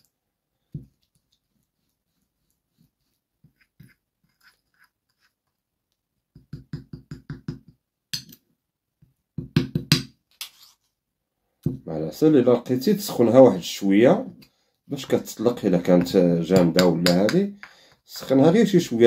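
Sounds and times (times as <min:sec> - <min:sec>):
spoon scraping a small dish: 0:03.5 - 0:05.4, 0:10.4 - 0:10.8.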